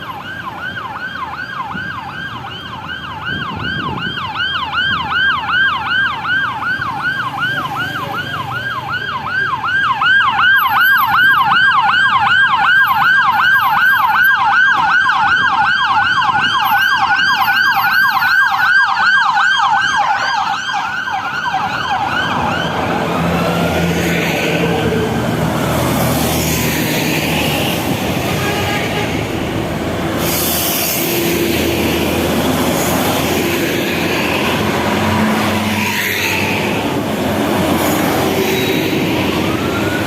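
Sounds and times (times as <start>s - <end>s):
electronic siren yelping: 0.0s - 25.3s
low traffic rumble: 0.0s - 40.0s.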